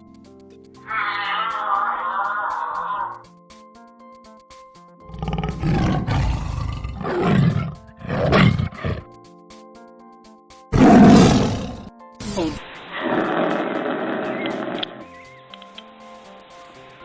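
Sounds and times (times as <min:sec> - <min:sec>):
soft background music: 0:00.0 - 0:17.0
large animal roaring: 0:00.9 - 0:03.2, 0:05.1 - 0:09.1, 0:10.8 - 0:15.0.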